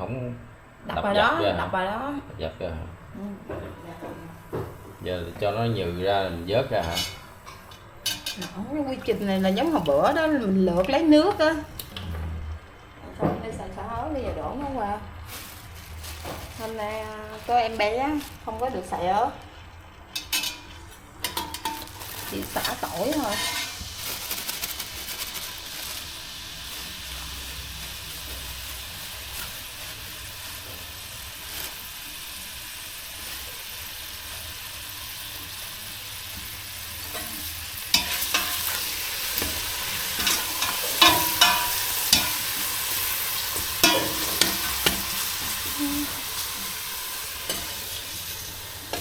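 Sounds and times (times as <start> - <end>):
food sizzling in a pan: 3.6 - 11.9, 14.4 - 49.0
utensil scraping a pan: 20.2 - 24.0.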